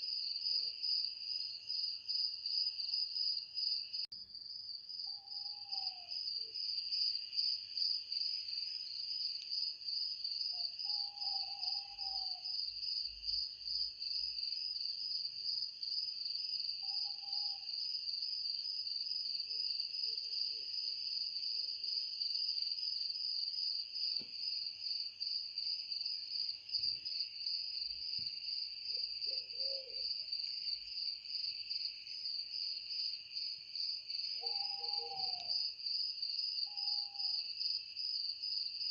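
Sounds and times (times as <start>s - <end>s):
crickets trilling: 5.0s - 14.1s, 26.8s - 37.8s
owl hooting: 5.1s - 6.1s, 10.9s - 12.4s, 16.8s - 17.7s, 29.3s - 30.0s, 34.4s - 35.5s, 36.7s - 37.4s.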